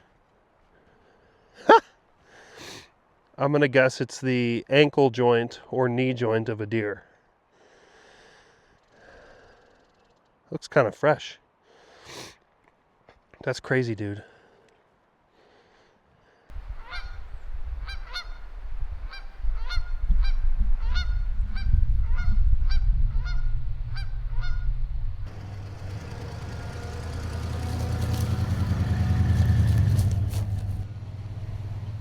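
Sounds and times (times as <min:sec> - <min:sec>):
geese honking: 0:16.8 - 0:17.2, 0:25.3 - 0:30.8
vehicle engine humming: 0:25.2 - 0:32.0.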